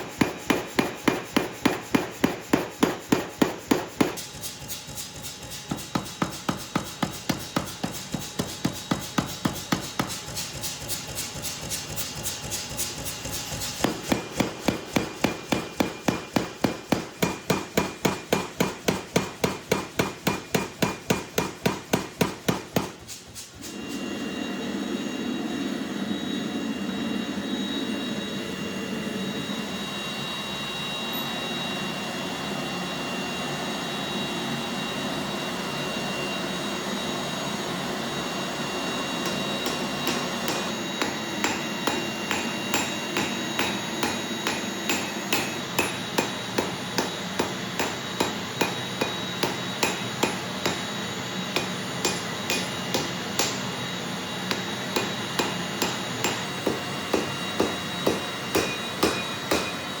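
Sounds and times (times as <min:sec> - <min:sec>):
hammer blows on hot steel: 0:39.1 - 0:53.8, 0:54.5 - 1:00.0.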